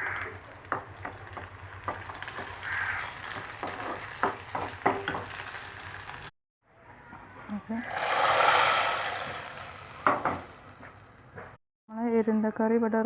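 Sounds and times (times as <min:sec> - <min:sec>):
shallots sizzling in hot oil: 0:00.0 - 0:06.3.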